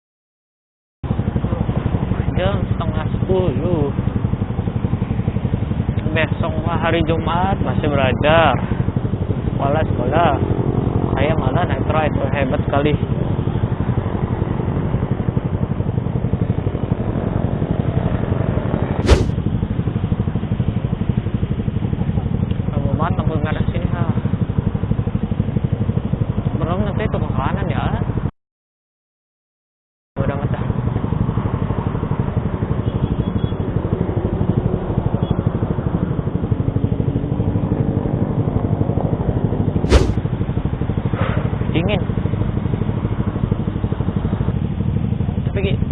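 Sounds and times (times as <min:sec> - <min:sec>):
sharp knock: 0:19.0 - 0:19.4, 0:39.9 - 0:40.2.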